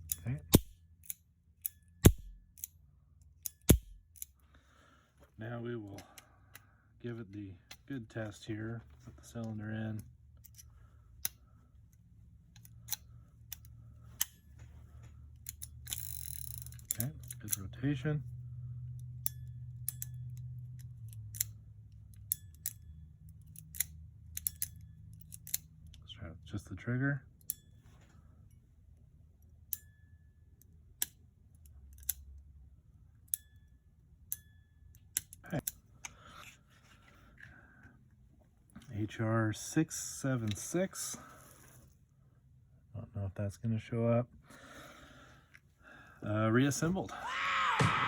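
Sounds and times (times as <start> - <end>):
revolver cylinder metal clicks: 0.0 - 4.4, 15.4 - 17.8, 19.0 - 26.0, 30.6 - 32.4, 33.2 - 36.5.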